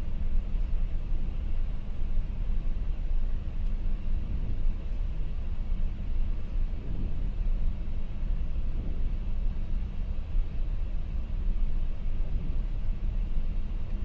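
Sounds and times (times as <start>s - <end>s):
steady rushing airflow: 0.0s - 14.0s.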